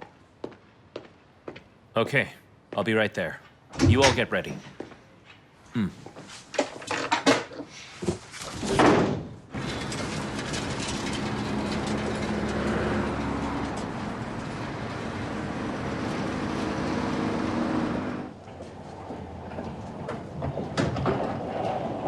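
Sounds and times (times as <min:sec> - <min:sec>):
door shutting: 0:03.8 - 0:04.6
vehicle running with low hum: 0:09.6 - 0:19.2.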